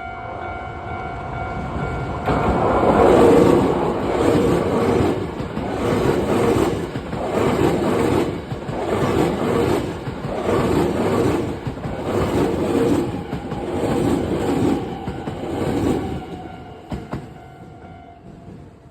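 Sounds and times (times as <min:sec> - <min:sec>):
train wheels drumming on rails: 0:02.2 - 0:18.9.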